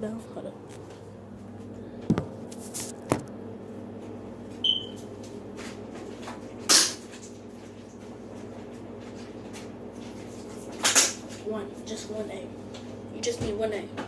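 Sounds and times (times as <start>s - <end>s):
low electrical hum: 0.0s - 14.0s.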